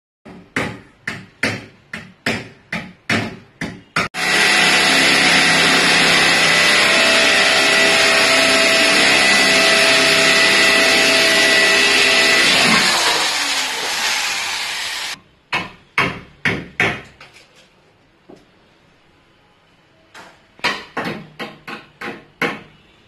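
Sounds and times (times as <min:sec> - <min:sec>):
hammer striking wood: 0:00.3 - 0:13.1, 0:20.6 - 0:22.7
electric drill whining: 0:04.2 - 0:15.2.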